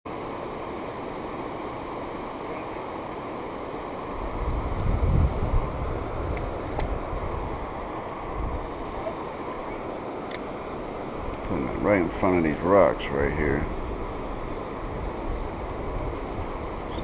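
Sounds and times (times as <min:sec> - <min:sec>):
outdoor hiss: 0:00.1 - 0:17.0
wind buffeting microphone: 0:04.1 - 0:09.9, 0:10.9 - 0:17.0.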